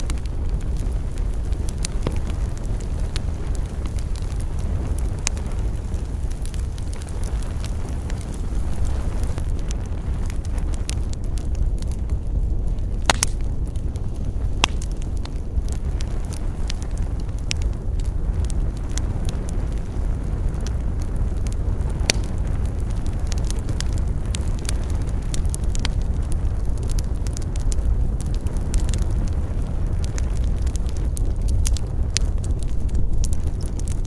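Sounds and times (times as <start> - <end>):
campfire crackling and popping: 0.0 - 34.0
low rumble: 0.0 - 34.0.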